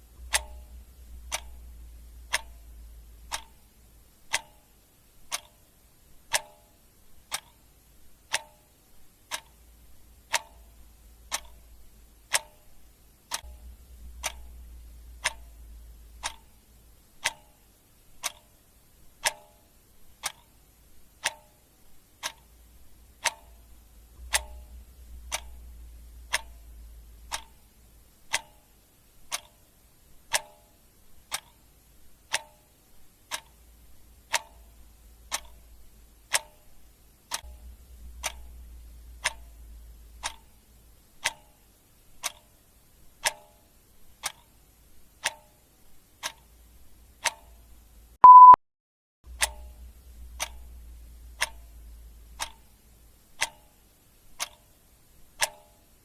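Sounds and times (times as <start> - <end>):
clock ticking: 0.0 - 48.6, 49.3 - 56.0
short high beep: 48.2 - 48.6.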